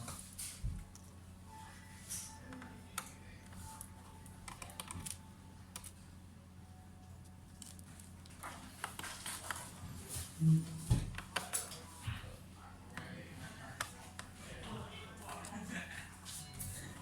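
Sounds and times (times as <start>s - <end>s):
steady low hum: 0.0s - 17.0s
laptop keyboard clicks: 4.4s - 6.0s.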